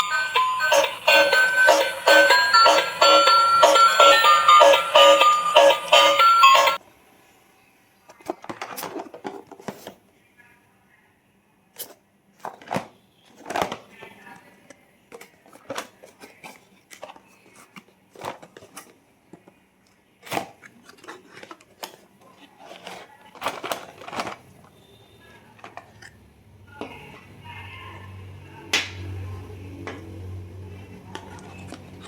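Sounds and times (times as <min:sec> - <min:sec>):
cardboard and plastic rustling: 0:08.1 - 0:10.1, 0:11.8 - 0:26.2.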